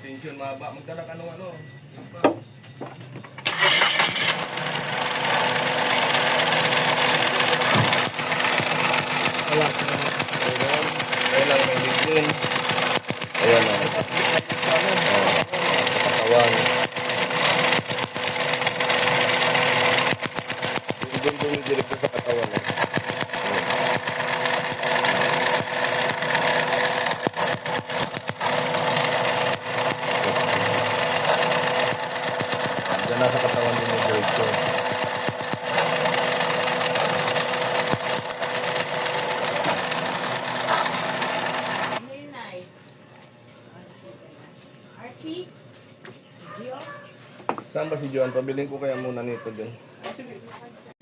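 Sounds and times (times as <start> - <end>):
car engine idling with misfire: 3.4 - 42.0.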